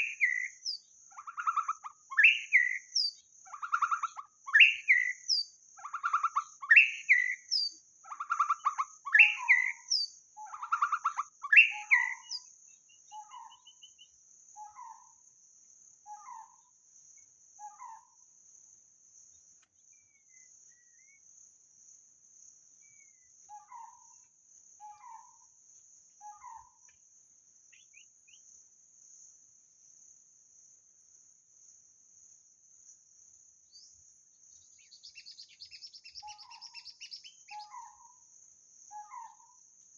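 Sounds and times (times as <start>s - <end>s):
bird singing whistled phrases: 0.0s - 0.6s, 1.4s - 3.1s, 3.7s - 12.5s
faint high insect buzz: 0.0s - 39.9s.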